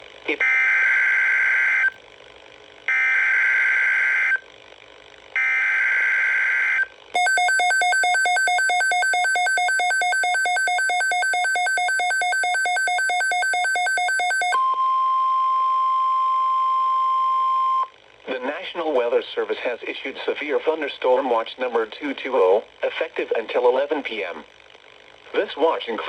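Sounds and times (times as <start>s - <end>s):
fast-pulsing electronic beep: 7.2s - 14.6s.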